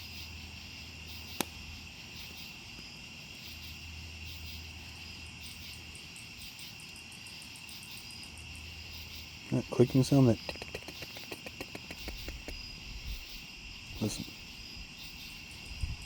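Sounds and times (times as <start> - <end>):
high-pitched insect trill: 0.0 - 16.0
sharp click: 10.4 - 12.6
rapid faint clicks: 10.4 - 12.7.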